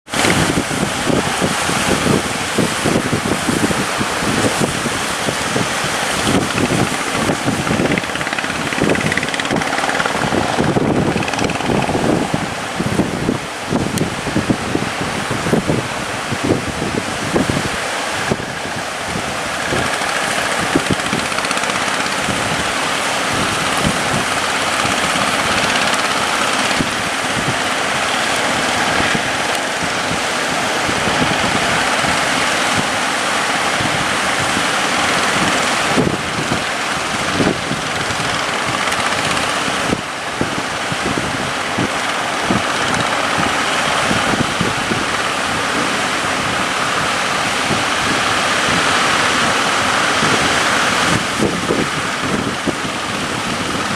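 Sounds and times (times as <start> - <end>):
waves breaking: 0.0 - 53.9
wind on microphone: 0.0 - 53.9
boat engine running: 0.1 - 53.9.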